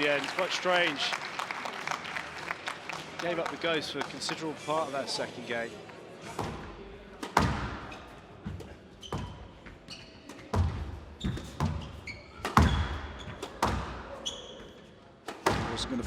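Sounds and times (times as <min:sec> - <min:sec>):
squash ball hitting rackets and walls: 0:06.2 - 0:16.0
shoes squeaking on court floor: 0:06.3 - 0:16.0.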